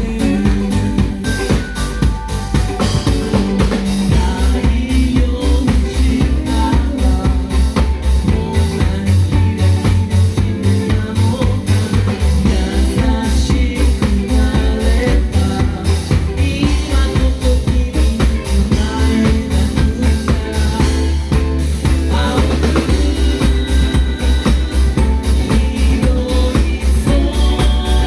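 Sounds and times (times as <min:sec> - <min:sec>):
drums beating: 0:00.0 - 0:28.0
live band playing: 0:00.0 - 0:28.0.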